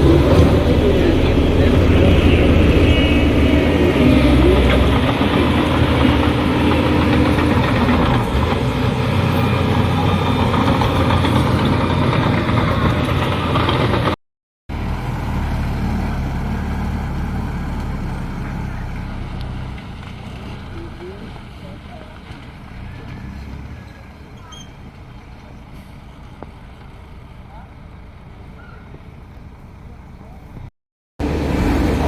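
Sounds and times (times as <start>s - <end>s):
heavy machinery diesel engines running: 0.0s - 32.0s.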